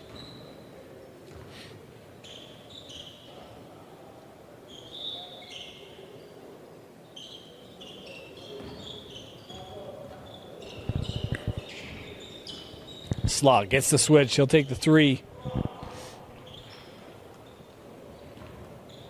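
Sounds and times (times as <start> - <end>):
low crowd murmur: 0.0 - 19.0
shoes squeaking on hardwood: 7.2 - 13.3.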